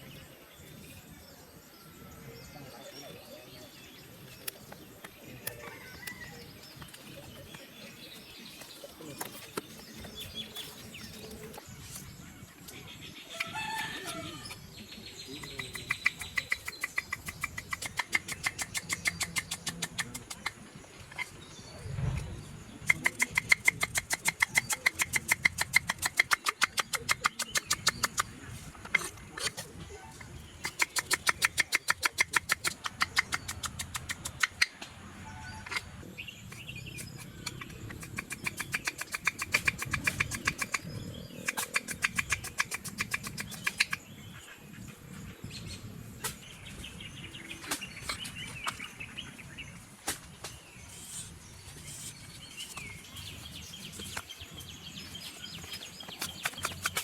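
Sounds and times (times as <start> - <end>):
birds chirping: 0.0 - 57.0
rapid rhythmic tapping: 15.4 - 20.6, 22.9 - 28.4, 30.6 - 34.7, 37.6 - 44.0.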